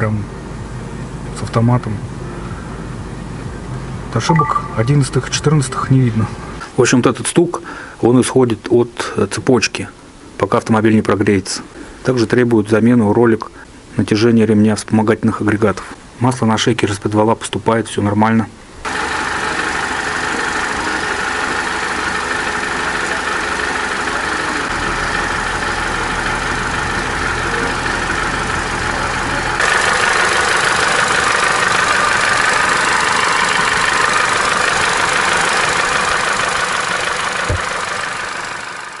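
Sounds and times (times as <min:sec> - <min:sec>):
car engine idling: 0:18.9 - 0:39.0.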